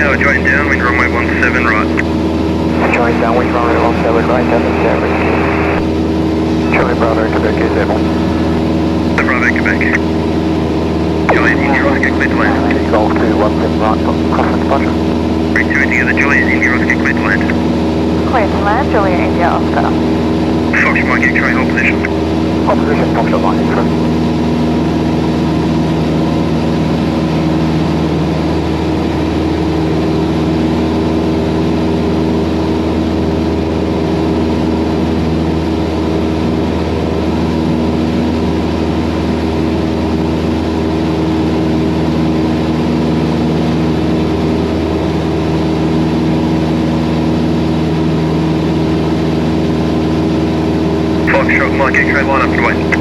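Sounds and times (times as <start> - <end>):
airplane engine droning in flight: 0.0 - 53.0.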